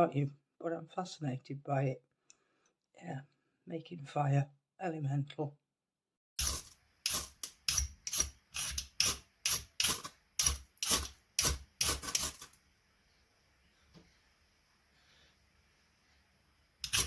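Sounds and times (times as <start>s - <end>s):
striker rasping on fire steel rod: 6.4s - 12.6s.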